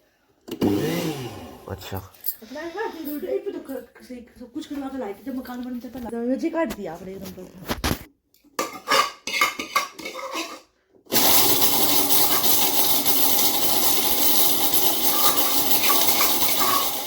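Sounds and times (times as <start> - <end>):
mixer grinder running: 0.5 - 1.9, 11.1 - 17.0
jar and lid clinking: 11.2 - 17.0.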